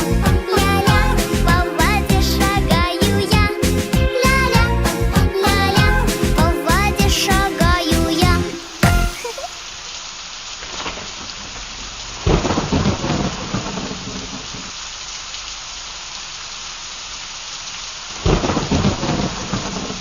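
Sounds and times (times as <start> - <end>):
rain hissing: 0.0 - 20.0.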